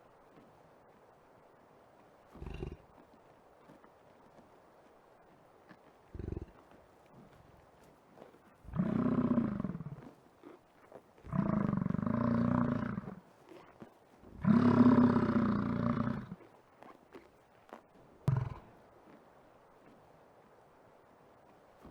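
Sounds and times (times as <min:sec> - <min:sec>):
bison bellowing: 0:08.7 - 0:10.0, 0:11.3 - 0:13.2, 0:14.4 - 0:16.4, 0:18.3 - 0:18.7.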